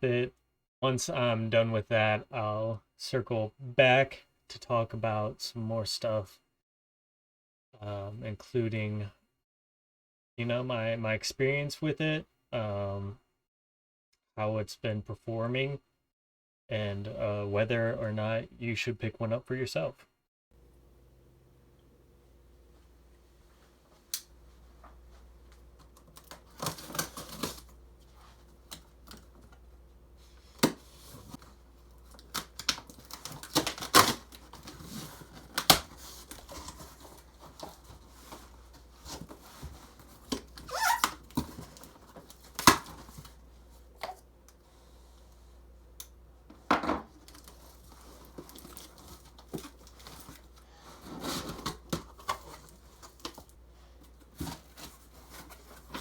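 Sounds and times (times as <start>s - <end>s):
packing material crinkling: 25.5s - 29.7s, 30.5s - 43.5s, 47.2s - 53.5s
cardboard tearing: 26.0s - 27.7s, 32.1s - 38.4s.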